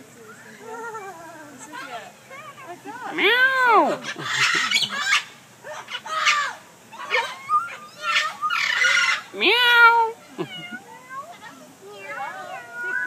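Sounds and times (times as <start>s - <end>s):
parrot squawking: 3.2s - 10.8s, 12.0s - 13.0s
parrot imitating cat meow: 8.1s - 10.8s.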